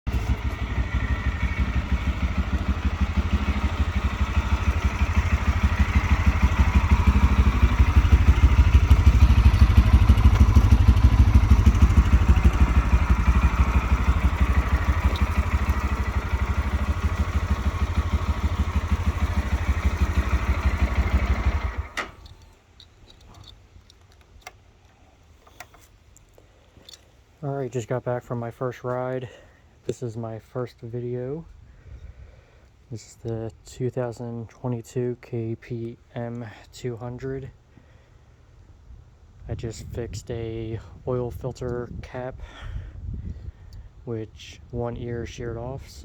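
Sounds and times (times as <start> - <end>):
motorcycle engine idling: 0.1 - 22.4.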